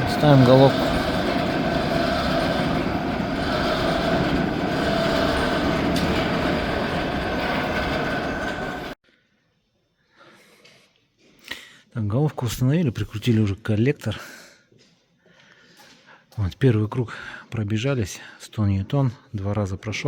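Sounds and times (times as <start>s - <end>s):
loud machine whine: 0.0s - 9.0s.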